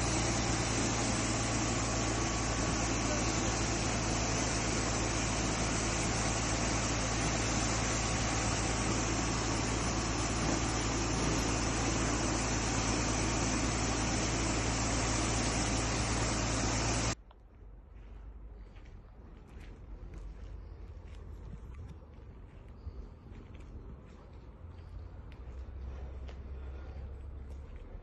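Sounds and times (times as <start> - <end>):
pump rushing noise: 0.0 - 17.2
constant low hum: 0.0 - 28.0.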